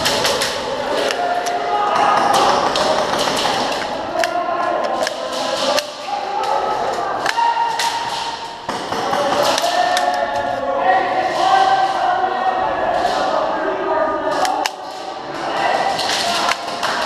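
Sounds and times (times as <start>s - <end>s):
airsoft guns firing: 0.0s - 6.1s.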